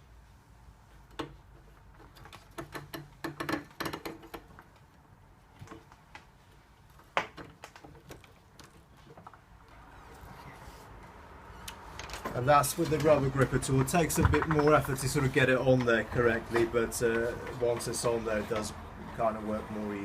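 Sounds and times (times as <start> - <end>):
letterbox tool rattling and clicking: 1.1 - 4.9, 11.9 - 18.8.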